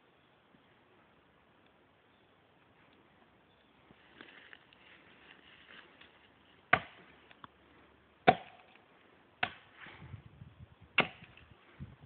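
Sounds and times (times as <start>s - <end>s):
axe chopping tree trunk: 6.7s - 7.0s, 8.2s - 8.8s, 9.4s - 9.7s, 10.9s - 11.4s.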